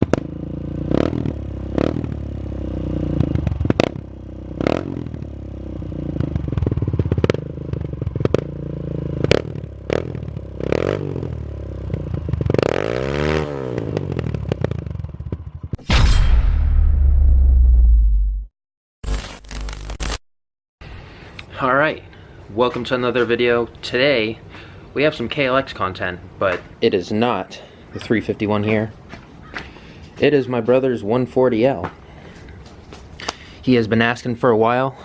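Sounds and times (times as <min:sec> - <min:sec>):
dirt bike engine revving: 0:00.1 - 0:14.6
sharp cracks: 0:15.8 - 0:17.7
loud rushing sound effect: 0:15.8 - 0:18.5.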